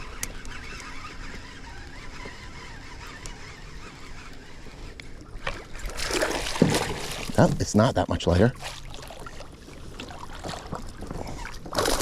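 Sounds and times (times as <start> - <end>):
faint wavering bird calls: 0.0 - 5.7.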